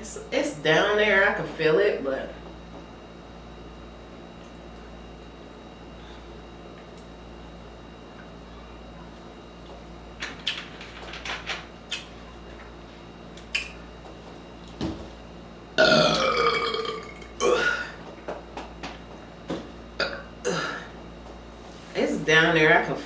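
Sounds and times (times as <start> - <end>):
woman burping: 15.8 - 18.0, 20.0 - 21.0.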